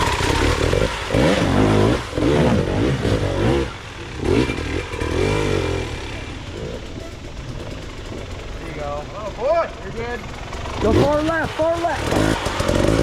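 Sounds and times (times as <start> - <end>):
dirt bike engine revving: 0.0 - 13.0.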